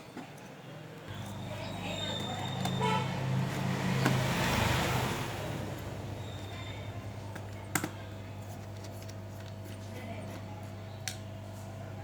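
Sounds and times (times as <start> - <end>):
road vehicle passing: 1.1 - 7.3.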